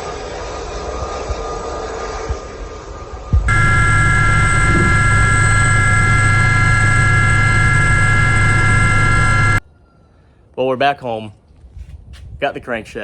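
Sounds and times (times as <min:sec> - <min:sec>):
helicopter engine and rotors: 0:03.4 - 0:09.6.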